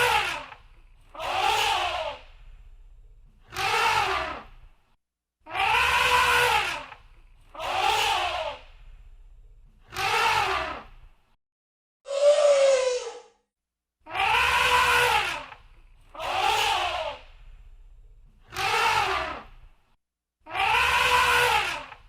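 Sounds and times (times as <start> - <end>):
faint low hum: 2.2 - 3.6, 8.6 - 9.8, 17.2 - 18.5
elephant trumpeting: 5.5 - 6.8, 14.2 - 15.4, 20.5 - 21.9.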